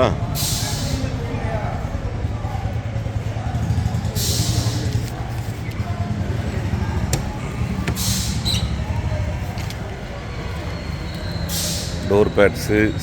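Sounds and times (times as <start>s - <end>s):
low mechanical rumble: 1.0s - 11.0s
short hisses: 7.9s - 8.5s.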